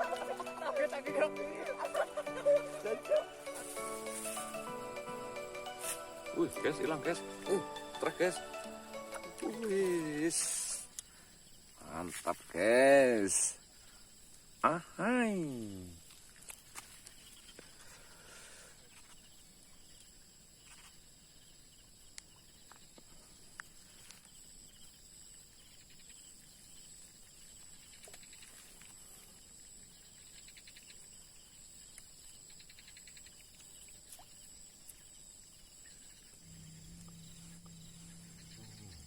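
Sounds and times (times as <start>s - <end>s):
insects droning and trilling: 0.0s - 39.0s
low hum: 36.4s - 39.0s.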